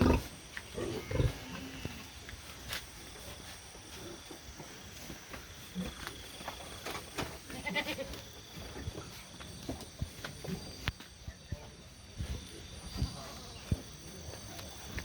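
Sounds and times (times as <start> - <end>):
pigs squealing and grunting: 0.0 - 1.9.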